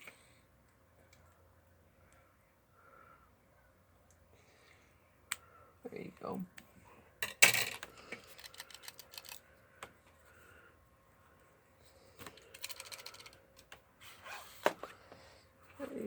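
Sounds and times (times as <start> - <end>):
plastic packaging clicks and rattles: 7.4 - 9.4, 12.2 - 13.8.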